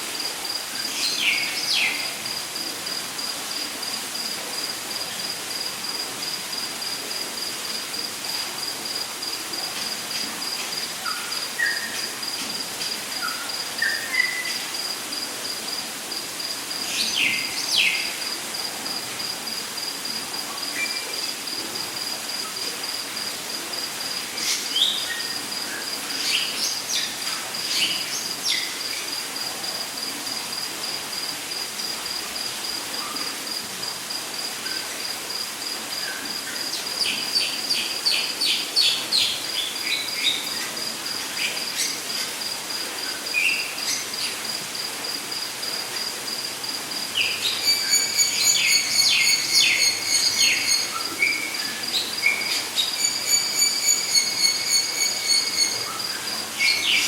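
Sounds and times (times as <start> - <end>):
pulsing insect trill: 0.2 - 32.8, 34.7 - 57.0
bird calls and chirps: 47.3 - 56.0
loud pulsed call: 53.0 - 55.9.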